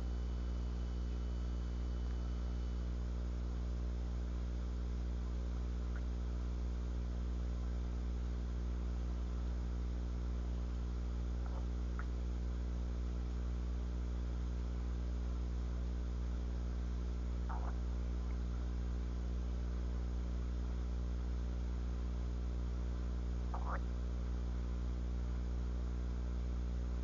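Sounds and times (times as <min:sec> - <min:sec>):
low electrical hum: 0:00.0 - 0:27.0
stomach gurgling squeaks: 0:17.5 - 0:17.8, 0:23.6 - 0:23.8.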